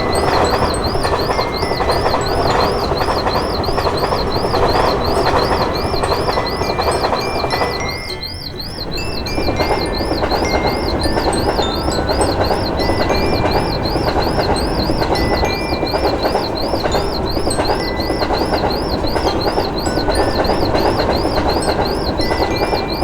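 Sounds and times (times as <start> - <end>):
crossing warning signal ringing: 0.0 - 23.0
train passing: 0.0 - 23.0.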